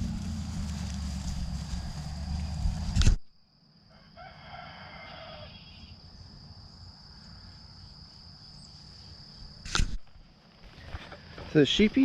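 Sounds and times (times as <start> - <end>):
rooster crowing: 3.8 - 5.9.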